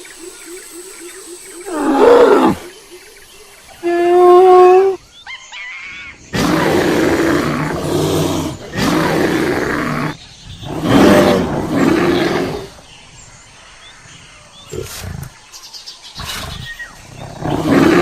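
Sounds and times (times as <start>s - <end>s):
rough roaring animal calls: 1.6s - 2.7s, 6.3s - 12.8s, 16.2s - 18.0s.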